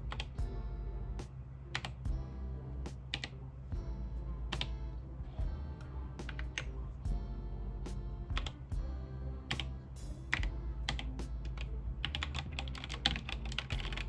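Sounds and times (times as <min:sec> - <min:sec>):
background music: 0:00.0 - 0:14.0
mechanical keyboard typing: 0:10.3 - 0:14.0.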